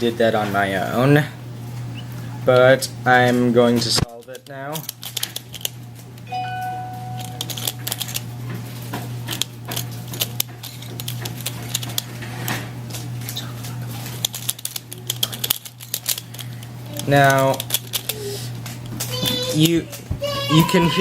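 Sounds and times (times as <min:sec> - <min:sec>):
steady low hum: 0:00.0 - 0:21.0
puzzle turning clicks: 0:04.4 - 0:08.3, 0:09.3 - 0:12.1, 0:14.0 - 0:19.2.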